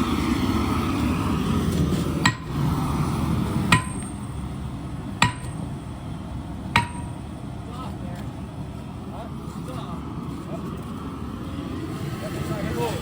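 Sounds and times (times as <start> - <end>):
low steady rumble: 0.0 - 10.4
hammer blows on steel: 3.7 - 4.2, 6.8 - 7.2.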